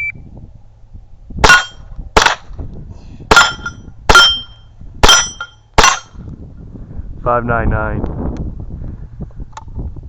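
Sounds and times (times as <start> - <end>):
steel target plate ringing: 1.4 - 2.4, 3.3 - 6.2
gunshots: 1.4 - 2.5.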